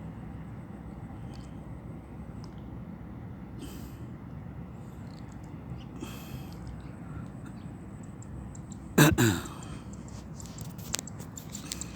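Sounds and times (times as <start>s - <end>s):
low background noise: 0.0s - 11.9s
person's short vocal sound: 9.0s - 9.5s.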